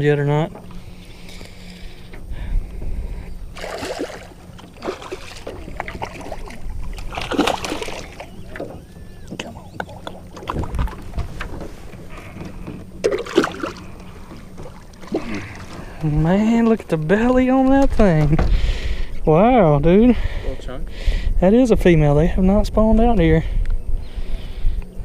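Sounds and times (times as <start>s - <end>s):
boat engine hum: 0.0s - 25.0s
water splashing: 3.5s - 16.9s
knocks and rustles: 10.3s - 13.4s.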